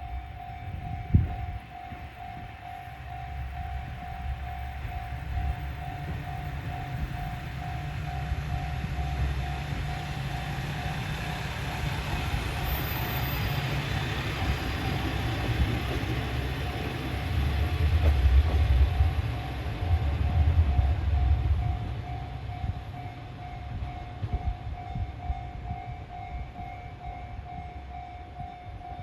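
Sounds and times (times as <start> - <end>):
train rumbling: 0.0 - 29.0.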